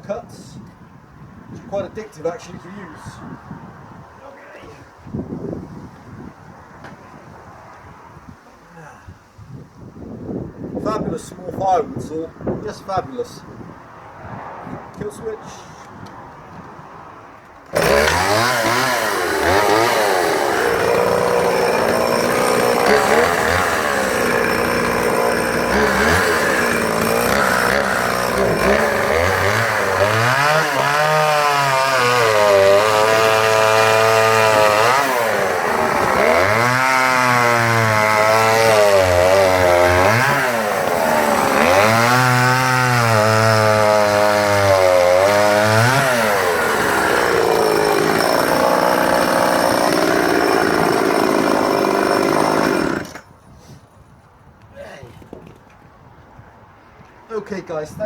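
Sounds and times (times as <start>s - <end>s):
chainsaw cutting logs: 17.7s - 53.4s.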